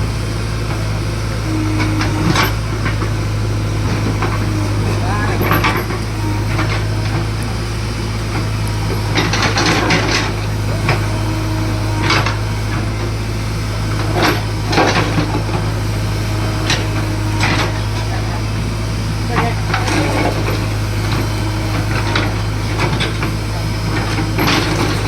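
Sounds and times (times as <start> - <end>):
excavator diesel engine hum: 0.0 - 25.0
digging knocks and clanks: 1.5 - 25.0.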